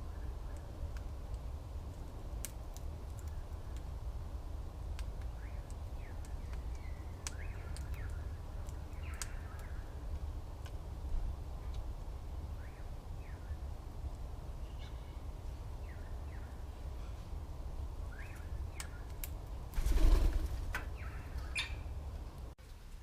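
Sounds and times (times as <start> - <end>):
small birds chirping: 5.0 - 10.3, 11.5 - 22.2.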